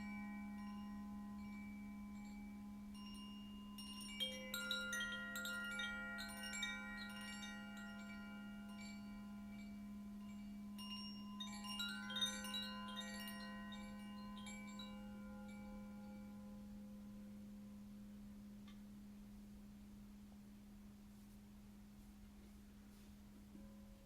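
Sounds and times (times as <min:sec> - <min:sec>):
chimes ringing: 0:00.0 - 0:16.6.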